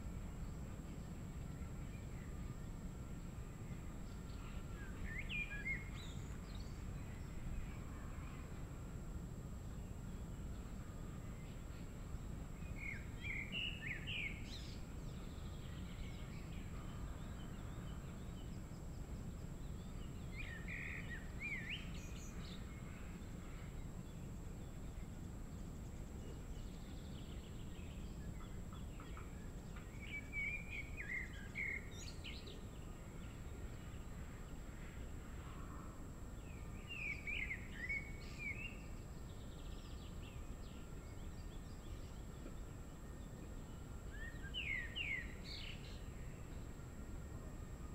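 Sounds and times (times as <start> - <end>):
low outdoor noise: 0.0 - 47.9.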